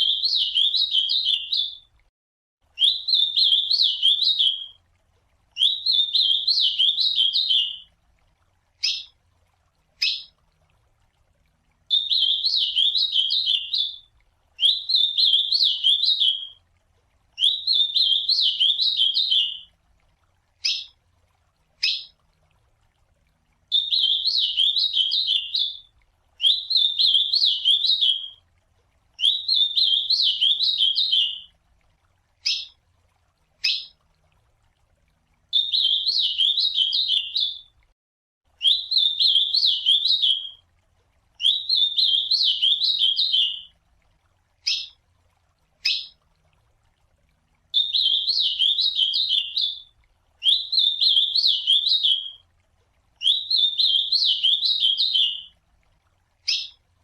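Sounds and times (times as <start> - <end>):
bird singing warbled phrases: 0.0 - 1.9, 2.8 - 4.8, 5.6 - 7.9, 8.8 - 9.2, 10.0 - 10.4, 11.9 - 16.6, 17.4 - 19.7, 20.6 - 21.0, 21.8 - 22.2, 23.7 - 28.4, 29.2 - 31.5, 32.4 - 32.8, 33.6 - 34.0, 35.5 - 37.7, 38.6 - 40.6, 41.4 - 43.7, 44.6 - 45.0, 45.8 - 46.2, 47.8 - 52.4, 53.2 - 55.5, 56.4 - 56.8.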